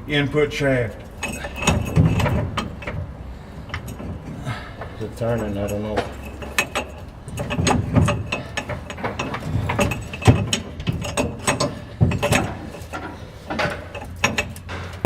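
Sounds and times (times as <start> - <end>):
metallic clicks and clunks of gears: 0.9 - 15.0.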